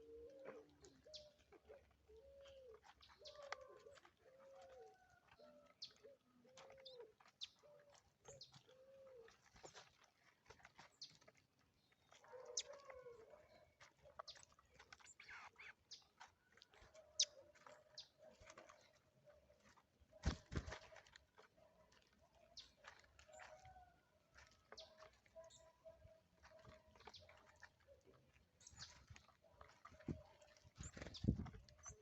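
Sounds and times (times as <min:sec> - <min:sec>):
birds pecking and scratching: 0:00.0 - 0:32.0
bird wing flaps: 0:20.2 - 0:20.9.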